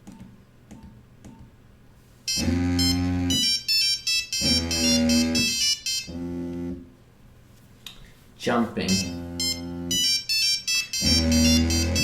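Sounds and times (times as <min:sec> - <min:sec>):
phone ringtone beeping melody: 0:02.3 - 0:06.2, 0:08.9 - 0:12.0.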